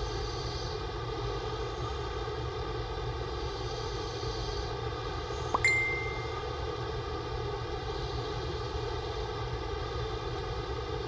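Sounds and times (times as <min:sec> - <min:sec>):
bright ding: 0:05.6 - 0:06.4.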